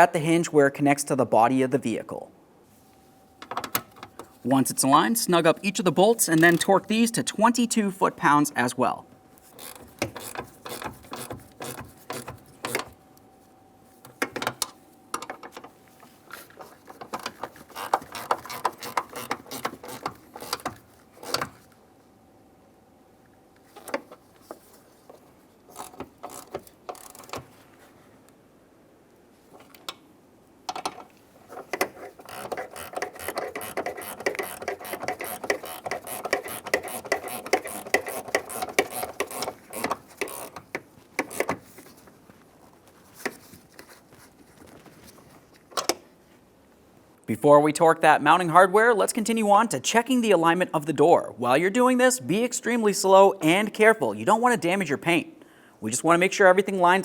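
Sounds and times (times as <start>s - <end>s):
hand ratchet clicking: 9.5s - 13.0s, 17.2s - 21.5s, 25.7s - 27.4s, 31.7s - 41.6s.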